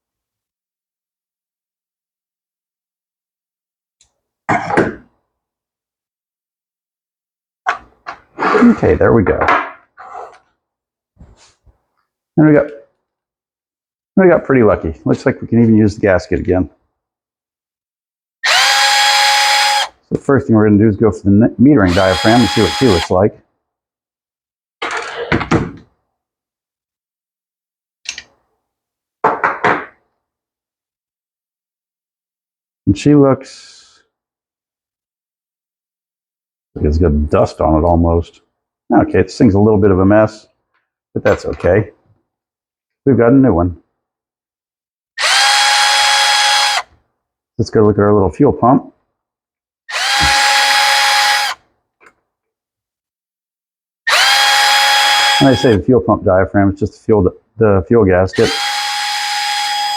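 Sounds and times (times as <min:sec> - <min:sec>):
cordless power driver spinning: 0:18.4 - 0:19.9, 0:21.9 - 0:23.1, 0:45.2 - 0:46.9, 0:49.9 - 0:51.6, 0:54.1 - 0:55.8, 0:58.4 - 0:59.9.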